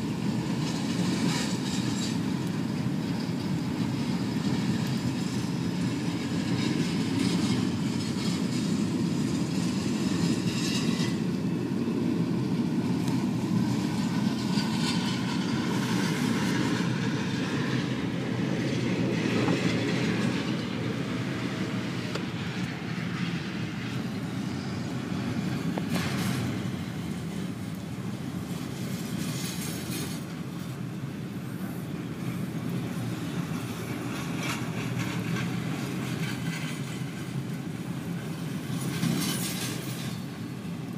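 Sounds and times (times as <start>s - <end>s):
freight train cars rolling: 0.0s - 40.9s
wheels clicking over rail joints: 23.9s - 31.0s, 32.2s - 40.9s.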